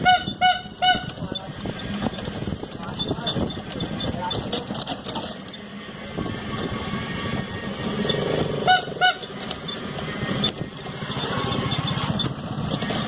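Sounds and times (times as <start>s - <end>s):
vehicle horn blasts: 0.0s - 1.3s, 8.6s - 9.4s
vehicle engine running: 0.0s - 13.0s.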